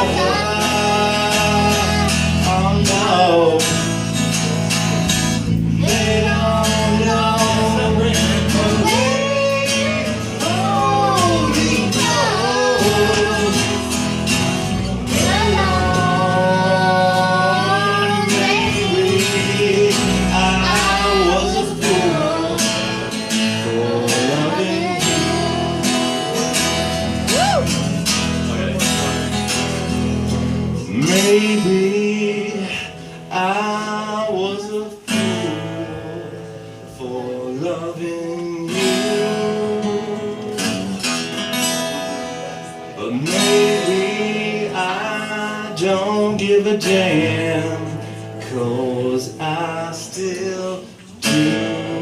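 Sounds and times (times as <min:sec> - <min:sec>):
held sliding lead melody: 0:00.0 - 0:30.9
country ballad music: 0:00.0 - 0:52.0
guitar accompaniment: 0:00.0 - 0:52.0.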